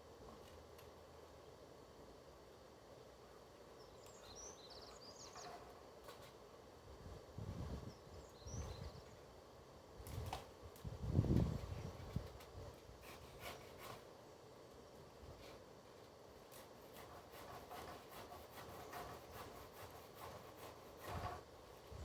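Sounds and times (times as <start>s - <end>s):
hand saw rasping through branch: 12.8s - 14.1s, 16.5s - 21.8s.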